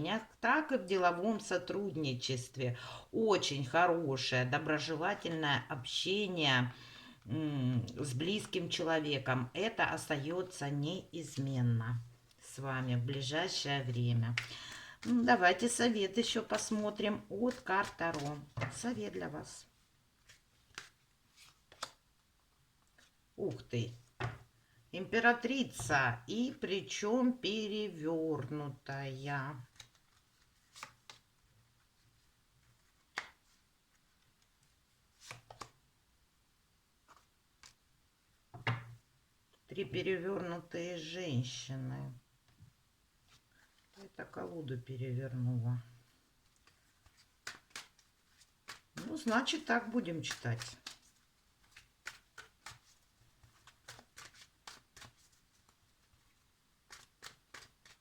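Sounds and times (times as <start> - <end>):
cards tapping and flicking: 20.3 - 22.0, 33.0 - 33.6, 35.2 - 35.8, 46.6 - 56.2, 56.8 - 58.0.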